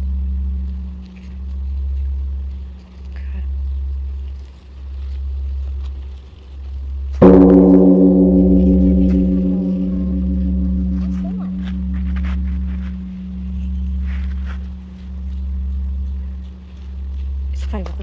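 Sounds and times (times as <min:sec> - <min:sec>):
large metal bell ringing: 0:07.2 - 0:18.0.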